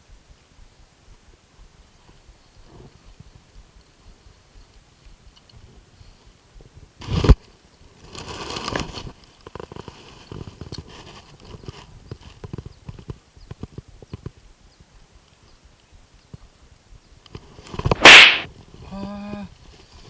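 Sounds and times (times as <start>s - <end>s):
short rushing noise: 17.9s - 18.5s
sharp loud hit: 18.0s - 18.5s.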